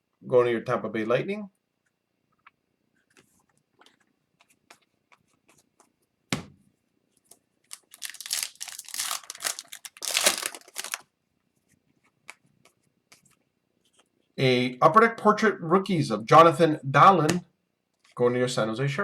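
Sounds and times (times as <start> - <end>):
foil wrapper tearing and crinkling: 7.7 - 11.0.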